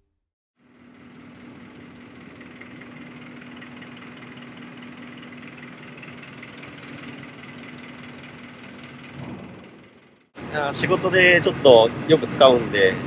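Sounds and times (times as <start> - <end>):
ferry engine running: 0.6 - 13.0.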